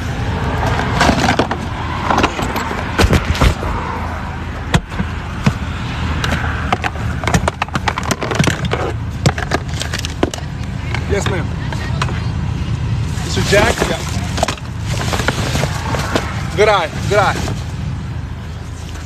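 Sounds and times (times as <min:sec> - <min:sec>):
wheel and tire knocking: 0:04.6 - 0:12.2.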